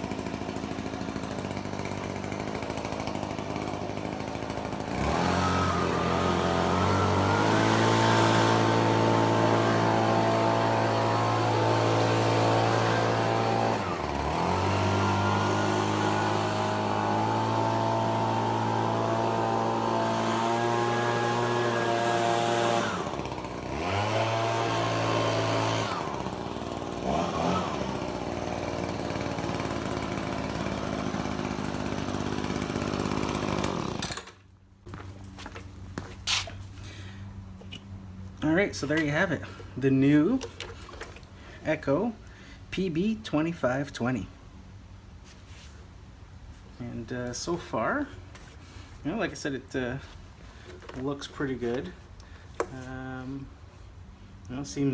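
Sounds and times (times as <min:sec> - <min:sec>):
leaf blower engine running: 0:00.0 - 0:43.3, 0:46.7 - 0:54.9.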